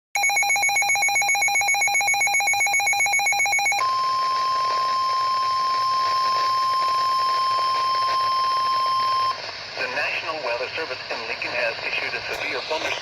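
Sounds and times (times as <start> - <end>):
rapidly pulsing alarm beep: 0.2 - 9.4
steady alarm tone: 0.2 - 9.4
radio hiss: 3.8 - 13.0.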